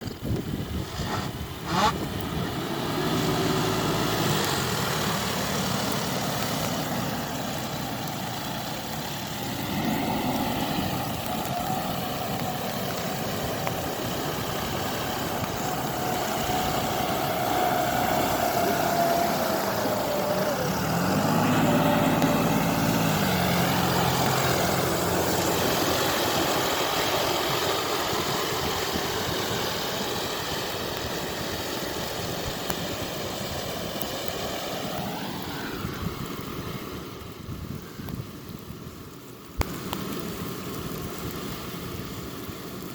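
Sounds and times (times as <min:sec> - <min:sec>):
tractor diesel engine revving: 0:00.8 - 0:29.3.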